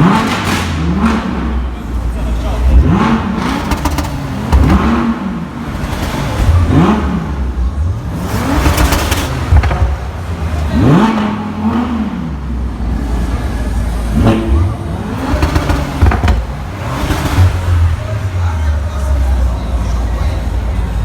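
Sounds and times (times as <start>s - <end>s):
exhaust pops and crackles: 0.0s - 11.9s, 15.2s - 18.1s
car engine revving: 0.0s - 21.0s.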